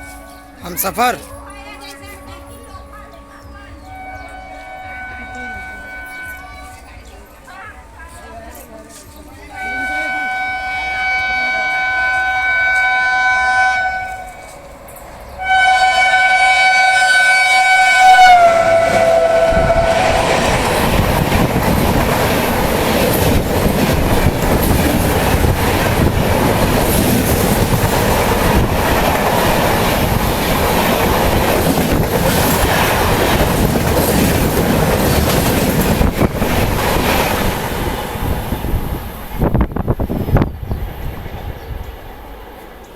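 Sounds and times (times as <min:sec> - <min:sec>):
rush of passing train: 0:00.0 - 0:42.9
locomotive horn blasts: 0:01.8 - 0:06.9, 0:09.6 - 0:14.5, 0:15.4 - 0:20.4.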